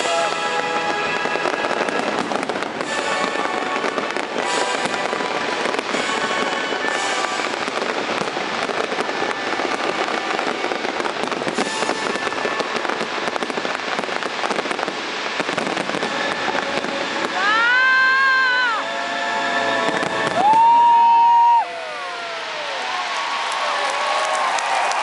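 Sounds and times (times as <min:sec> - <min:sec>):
music playing: 0:00.0 - 0:14.8, 0:15.4 - 0:20.6
fireworks crackling and popping: 0:00.0 - 0:25.0.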